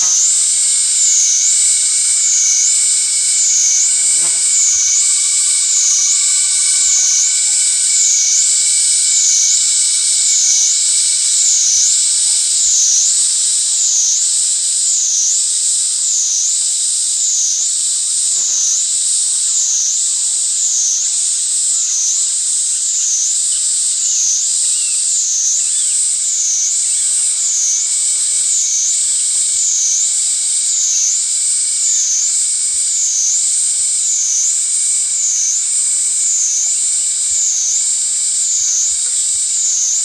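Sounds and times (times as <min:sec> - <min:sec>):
cicada buzzing: 0:00.0 - 0:40.0.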